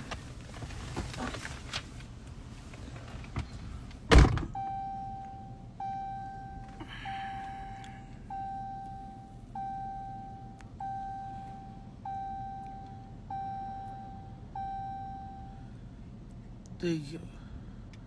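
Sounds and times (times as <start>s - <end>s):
door thudding shut: 4.1s - 4.6s.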